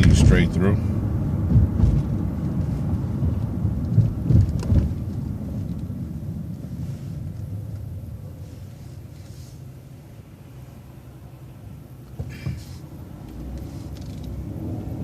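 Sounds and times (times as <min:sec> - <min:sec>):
bus engine rumble: 0:00.0 - 0:15.0
road noise: 0:00.0 - 0:15.0
heavy thumps: 0:01.4 - 0:02.2.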